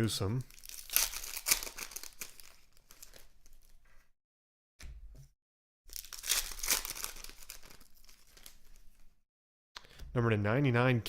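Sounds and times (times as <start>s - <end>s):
wrappers rustling and crinkling: 0.4s - 4.1s, 5.9s - 9.2s.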